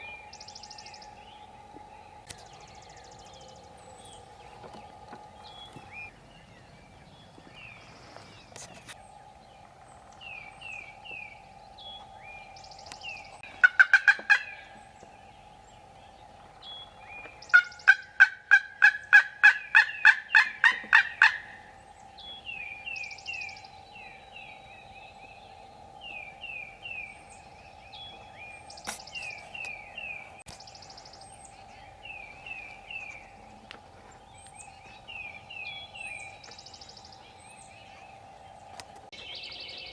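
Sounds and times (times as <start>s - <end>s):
small birds chirping: 0.0s - 18.2s, 19.0s - 39.9s
faint steady hum: 0.0s - 39.9s
turkey yelping: 13.6s - 14.7s, 17.5s - 21.6s.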